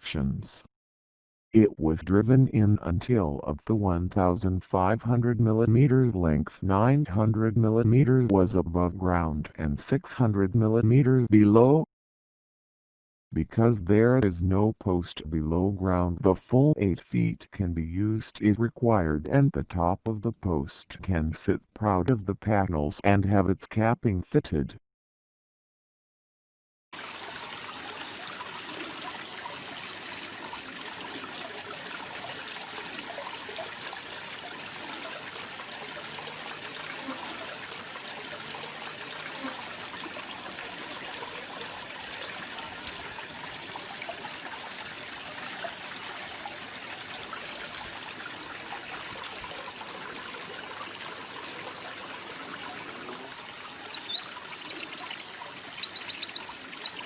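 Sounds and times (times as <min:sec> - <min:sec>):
songbird trilling: 0:53.5 - 0:57.0.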